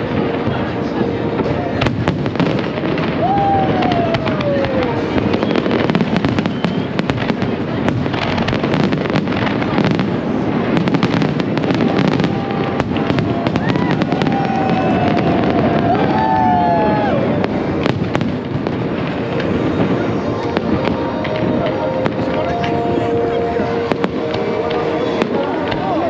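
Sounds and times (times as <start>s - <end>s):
dense crackling: 0.0s - 26.0s
high tone sliding down: 19.3s - 26.0s.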